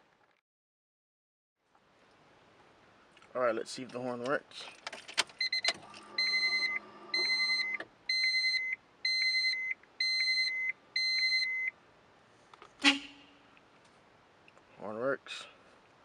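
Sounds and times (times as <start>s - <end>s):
car warning chime beeping: 5.4s - 11.8s
car horn toot: 12.8s - 13.4s.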